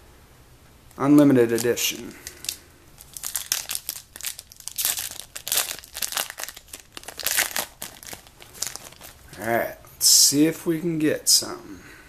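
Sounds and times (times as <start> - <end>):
wrapper crinkling and tearing: 1.4 - 9.4.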